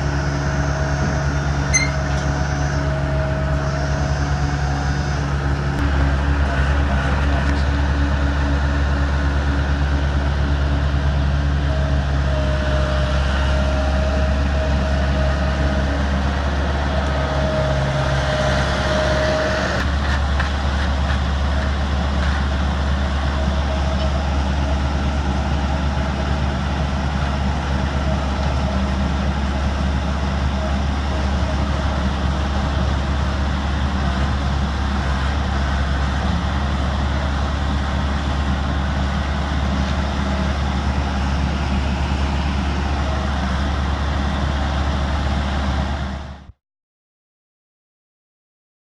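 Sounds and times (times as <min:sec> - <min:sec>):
loader engine droning: 0:00.0 - 0:46.6
thin whine: 0:00.6 - 0:08.1.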